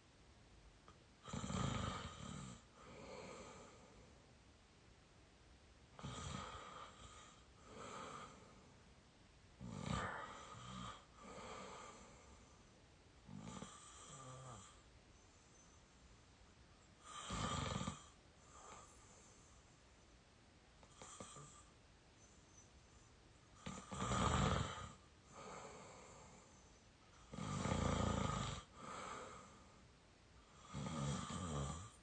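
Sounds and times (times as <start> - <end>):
person snoring: 1.2 - 3.9, 6.0 - 8.6, 9.6 - 12.4, 13.3 - 14.8, 17.0 - 19.0, 23.6 - 26.5, 27.2 - 29.7, 30.5 - 32.0.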